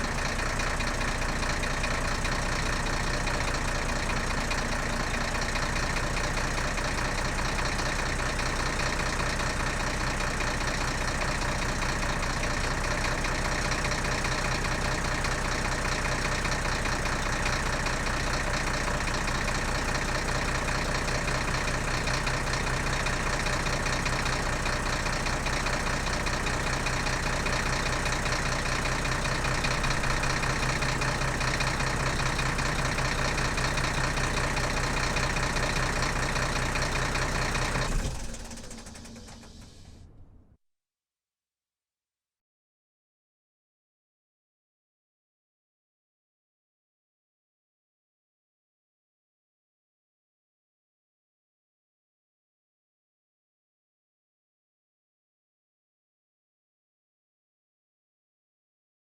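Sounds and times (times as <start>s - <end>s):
diesel engine idling: 0.0s - 40.6s.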